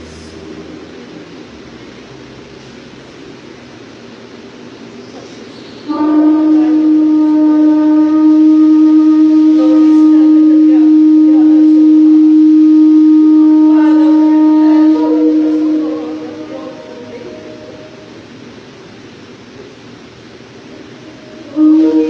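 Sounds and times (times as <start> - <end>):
loud horn blast: 5.9 - 18.6, 20.7 - 22.0.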